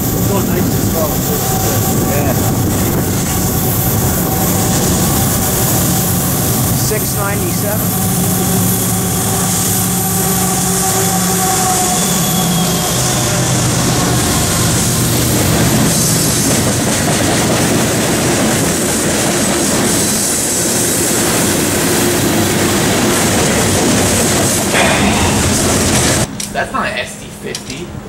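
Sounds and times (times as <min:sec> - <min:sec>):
locomotive engine drone: 0:00.0 - 0:26.5
wheel squeal: 0:07.7 - 0:16.6
freight cars rumbling past: 0:21.0 - 0:26.4.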